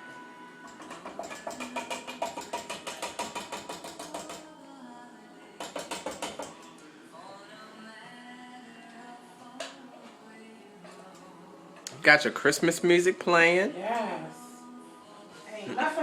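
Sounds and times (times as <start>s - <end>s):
metal utensil knocking on bowl: 0.7s - 4.4s.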